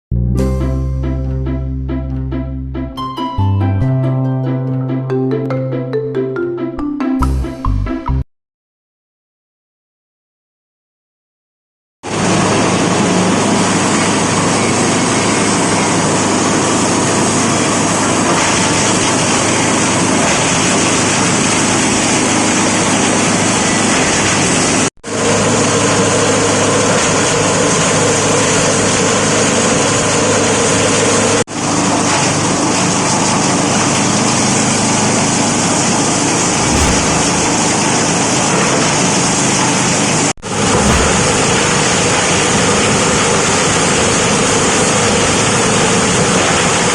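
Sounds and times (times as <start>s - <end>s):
shredder machine running: 12.1s - 38.0s.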